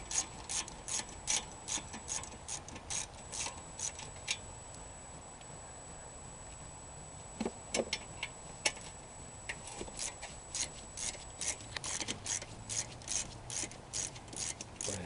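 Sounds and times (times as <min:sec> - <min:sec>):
ratchet wrench clicking: 0:00.1 - 0:04.4, 0:10.0 - 0:15.0.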